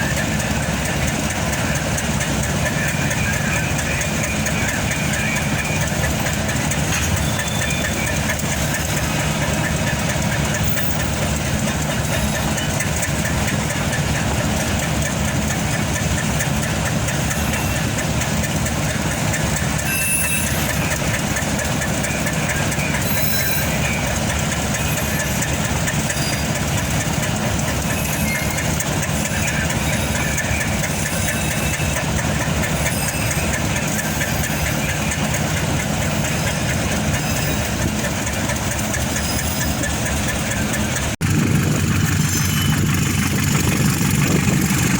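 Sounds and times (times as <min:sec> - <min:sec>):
train wheels rumbling on rails: 0:00.0 - 0:44.9
low engine drone: 0:41.2 - 0:44.9.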